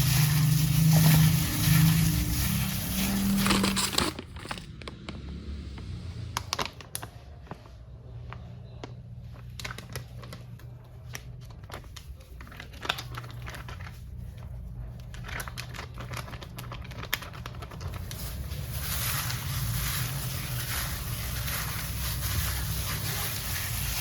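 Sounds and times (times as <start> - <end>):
crinkling and light clicks: 6.4 - 20.0.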